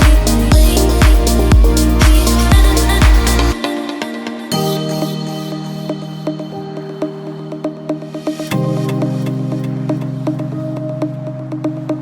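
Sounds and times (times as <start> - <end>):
kick drum: 0.0 - 3.5
electronic dance music: 0.0 - 12.0.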